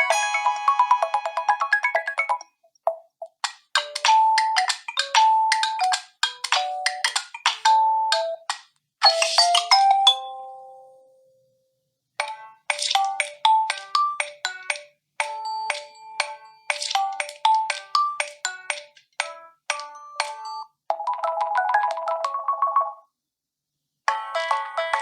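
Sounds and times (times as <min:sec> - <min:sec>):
phone ringtone tunes: 0:00.0 - 0:02.5, 0:09.0 - 0:11.0, 0:12.7 - 0:23.1.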